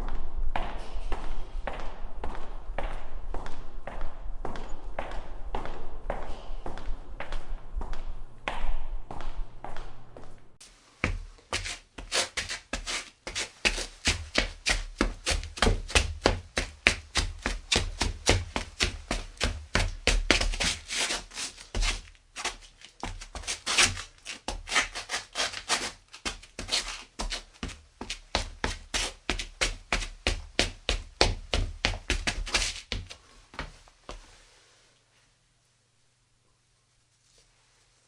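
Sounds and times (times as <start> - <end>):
quick footsteps clicking: 11.0 - 33.8.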